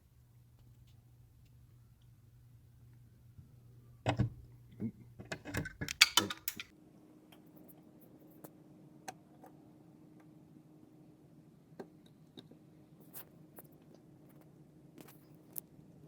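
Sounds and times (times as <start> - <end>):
clicks and clattering of handling: 5.2 - 6.7.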